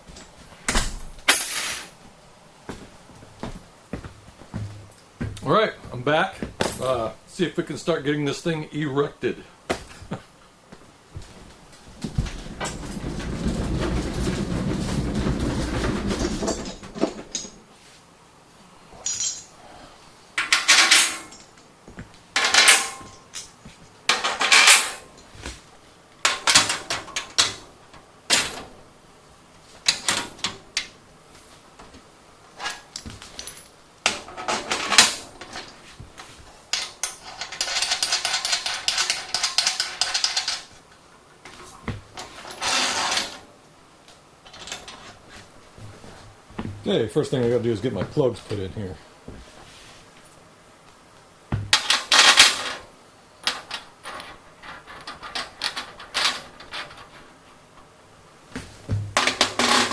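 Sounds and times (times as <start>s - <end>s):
metal parts clanking: 0.8s - 2.0s, 12.5s - 17.6s, 19.0s - 19.5s, 20.4s - 21.6s, 22.4s - 25.3s, 26.2s - 27.7s, 36.7s - 40.7s, 42.2s - 43.4s, 51.7s - 52.8s, 59.1s - 59.9s
metal scraping: 42.2s - 43.4s.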